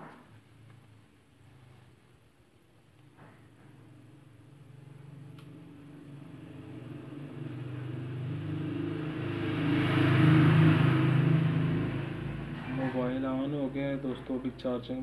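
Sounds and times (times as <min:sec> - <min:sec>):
vehicle engine passing by: 0:03.4 - 0:15.0.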